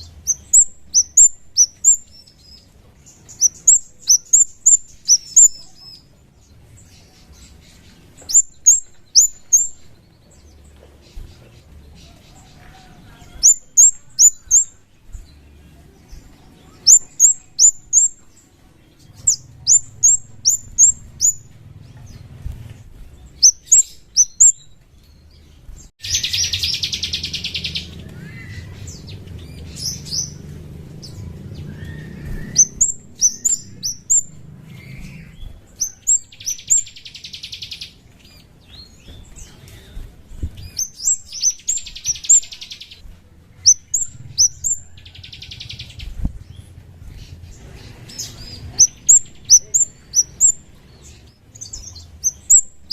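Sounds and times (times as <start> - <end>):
bird calling high notes: 31.3 - 35.4.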